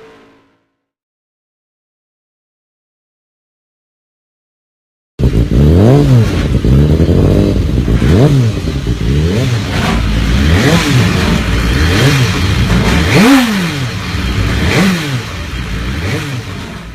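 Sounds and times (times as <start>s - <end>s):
motorcycle engine revving: 5.2s - 16.9s
motorcycle engine idling: 6.3s - 16.9s.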